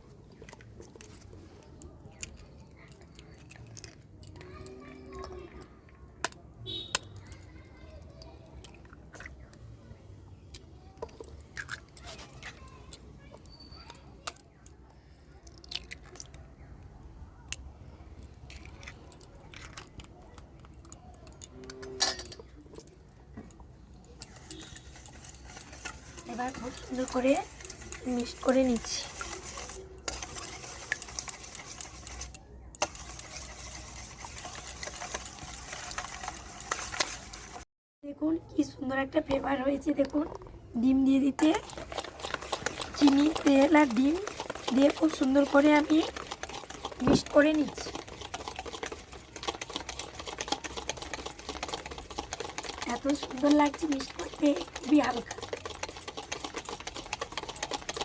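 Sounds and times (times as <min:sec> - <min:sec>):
eggshells cracking on bowl: 0:10.5 - 0:13.0, 0:15.4 - 0:16.6, 0:41.4 - 0:58.0
utensil scraping and clicking in bowl: 0:18.4 - 0:37.7, 0:41.1 - 0:58.0.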